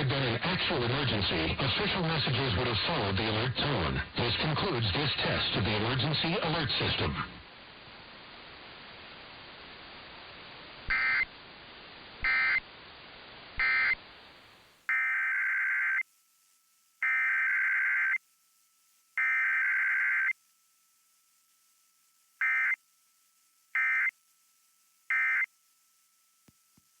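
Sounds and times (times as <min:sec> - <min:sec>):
background hiss: 0:00.0 - 0:27.0
buzzy two-tone digital data bursts: 0:10.9 - 0:11.3, 0:12.2 - 0:12.6, 0:13.6 - 0:14.0, 0:14.9 - 0:20.4, 0:23.7 - 0:24.2, 0:25.1 - 0:25.5.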